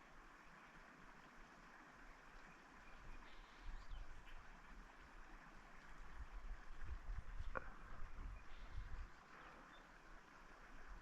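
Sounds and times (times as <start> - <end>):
faint creek water rushing: 0.0 - 11.0
low rumbling on microphone: 6.0 - 9.2.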